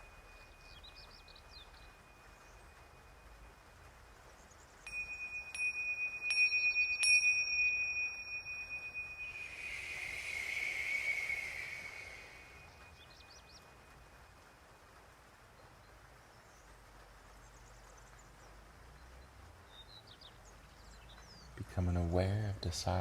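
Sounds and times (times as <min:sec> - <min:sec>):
high-pitched metal chime struck: 0:04.9 - 0:10.2
shimmering chime wash: 0:04.9 - 0:13.0.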